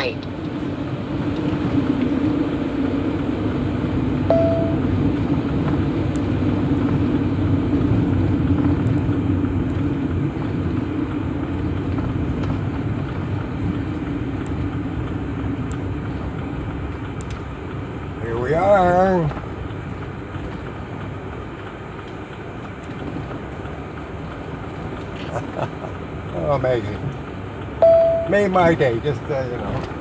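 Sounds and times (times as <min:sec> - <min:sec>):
road noise: 0:00.0 - 0:30.0
vehicle engine drone: 0:00.0 - 0:30.0
short beep: 0:04.3 - 0:05.0, 0:27.8 - 0:28.4.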